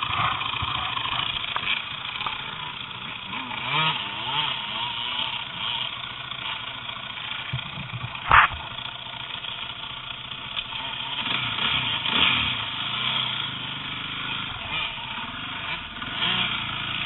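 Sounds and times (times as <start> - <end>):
vehicle engine running roughly: 0.0 - 17.0
sharp loud engine knock: 7.4 - 8.8.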